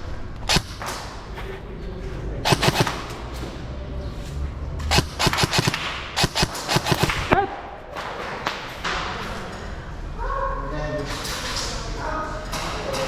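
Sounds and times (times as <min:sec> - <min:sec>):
airsoft guns firing: 0:00.4 - 0:01.3, 0:02.4 - 0:03.3, 0:04.9 - 0:08.2.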